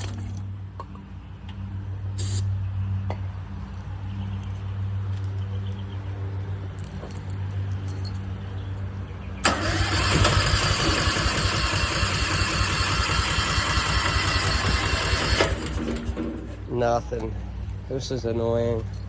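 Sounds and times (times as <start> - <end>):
generator engine cranking: 9.4 - 16.7.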